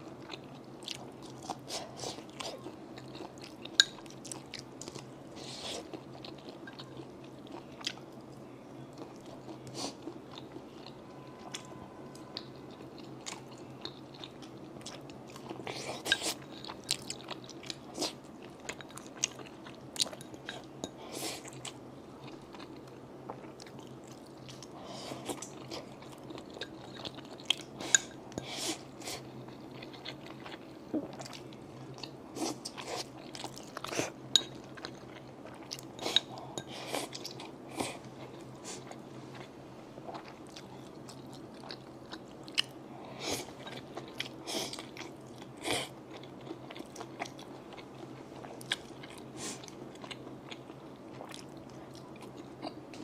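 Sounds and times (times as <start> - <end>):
person chewing crunchy food: 0.1 - 8.4, 9.0 - 53.0.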